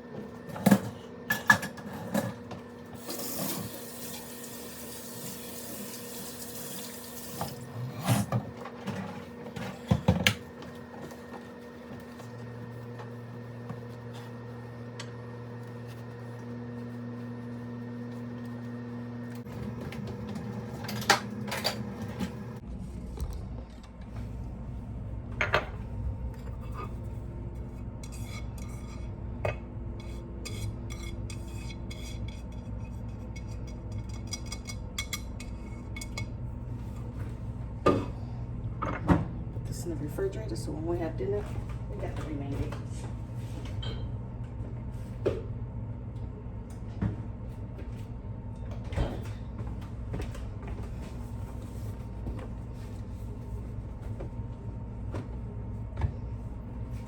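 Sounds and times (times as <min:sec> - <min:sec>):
tap running: 0:02.9 - 0:07.7.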